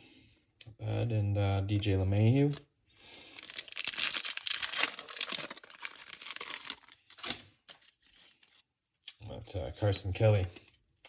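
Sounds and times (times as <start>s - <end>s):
foil wrapper tearing and crinkling: 3.2s - 7.9s.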